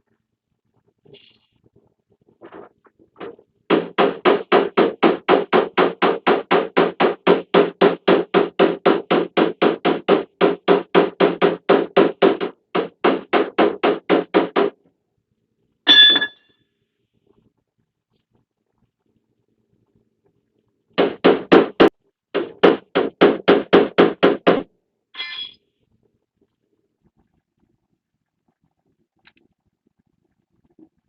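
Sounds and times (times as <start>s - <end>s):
hammer tapping on sheet metal: 3.2s - 14.7s, 21.0s - 24.6s
loud ringing hammer strike: 15.9s - 16.4s.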